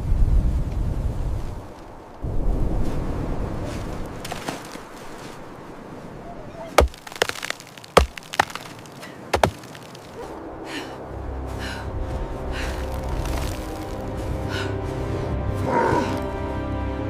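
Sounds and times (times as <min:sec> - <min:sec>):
sharp cracking impacts: 0:06.8 - 0:10.2
low droning music: 0:10.2 - 0:17.0.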